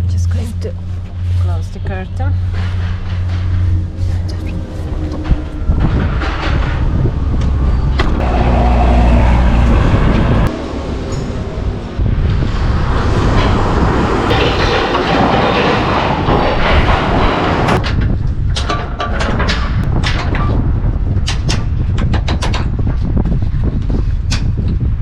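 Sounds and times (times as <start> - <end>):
wind rumbling against cab: 0.0 - 25.0
heavy rustling: 0.2 - 8.2.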